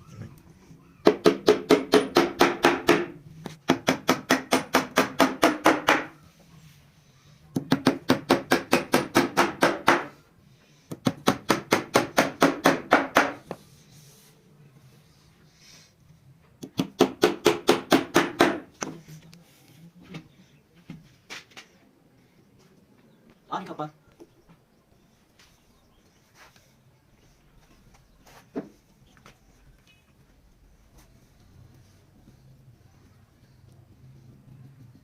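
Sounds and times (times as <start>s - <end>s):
hand tool striking wood: 1.0s - 6.1s, 7.6s - 10.2s, 10.9s - 13.5s, 16.6s - 18.7s.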